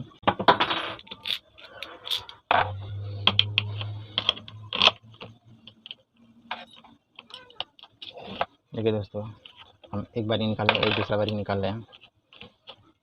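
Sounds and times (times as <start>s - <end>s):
metallic clicks and scrapes of tools: 1.0s - 2.4s
low steady hum: 1.3s - 7.3s.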